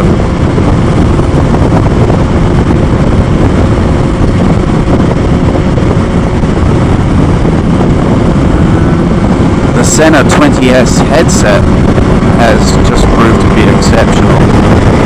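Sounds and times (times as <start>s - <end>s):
motorcycle engine drone: 0.0s - 15.0s
wind rush: 0.0s - 15.0s.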